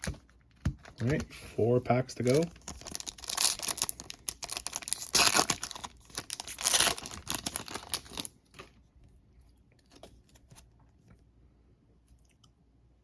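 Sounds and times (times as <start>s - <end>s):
wrapper tearing and crinkling: 2.2s - 8.6s.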